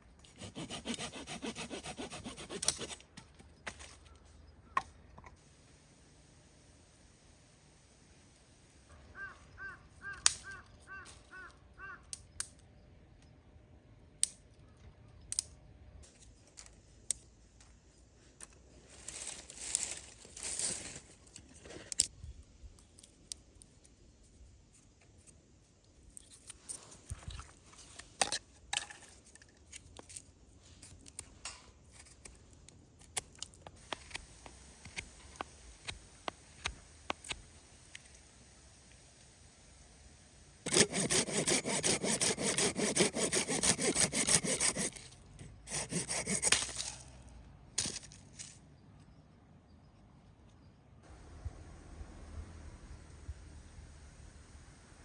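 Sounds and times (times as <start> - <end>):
crow cawing: 9.1 - 12.1.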